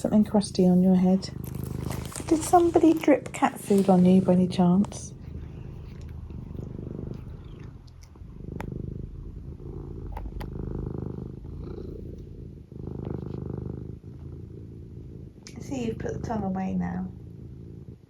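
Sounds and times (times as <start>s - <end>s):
cat purring: 0.0s - 18.0s
faint clicks: 10.0s - 10.6s.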